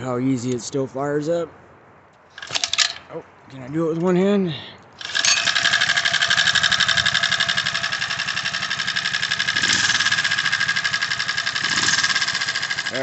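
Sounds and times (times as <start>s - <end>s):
small engine idling: 5.0s - 13.0s.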